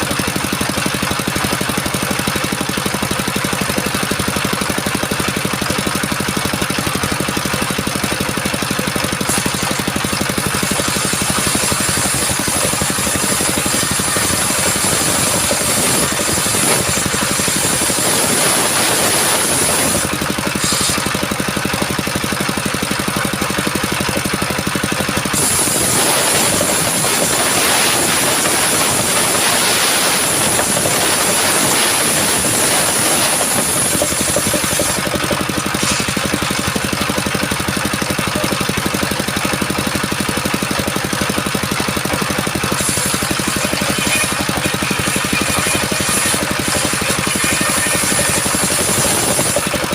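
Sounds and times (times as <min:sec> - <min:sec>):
circular saw blade cutting wood: 0:09.2 - 0:21.3, 0:25.1 - 0:37.2, 0:42.6 - 0:49.9.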